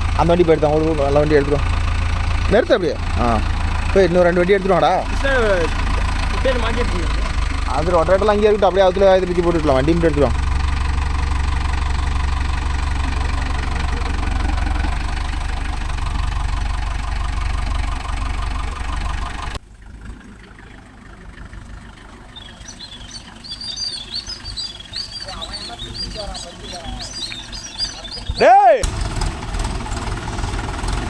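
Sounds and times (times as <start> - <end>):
birds chirping: 0.0 - 28.8
tractor diesel engine running: 0.0 - 31.0.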